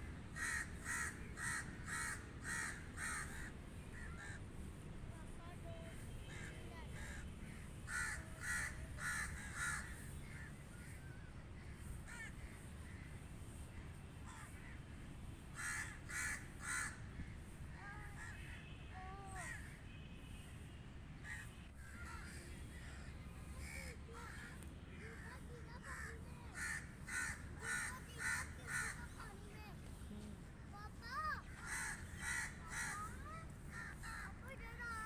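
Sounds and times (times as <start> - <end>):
crows cawing: 0.3 - 4.4, 6.3 - 13.2, 14.2 - 14.8, 15.5 - 18.6, 21.2 - 29.3, 31.1 - 35.0.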